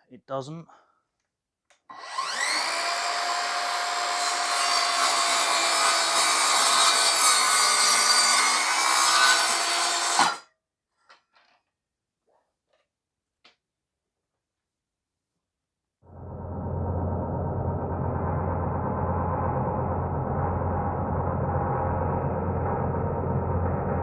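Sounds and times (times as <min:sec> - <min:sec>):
mitre saw cutting wood: 0:01.9 - 0:10.4.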